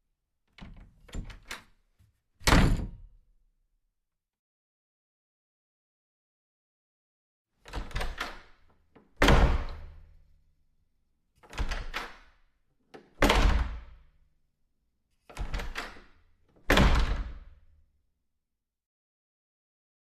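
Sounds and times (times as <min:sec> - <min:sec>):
door latch and handle rattle: 0:00.6 - 0:01.8, 0:02.4 - 0:03.1, 0:07.7 - 0:08.4, 0:11.4 - 0:12.2, 0:15.3 - 0:17.2
door slamming: 0:02.4 - 0:03.1, 0:16.7 - 0:17.4.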